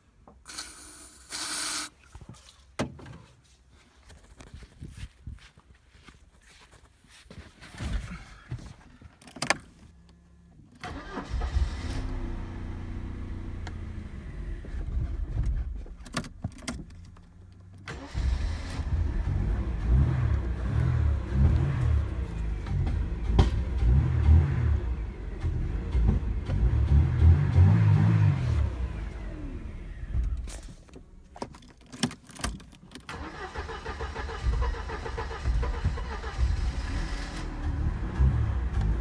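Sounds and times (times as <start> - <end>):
car engine cranking and starting: 0.2 - 1.9, 10.7 - 39.0.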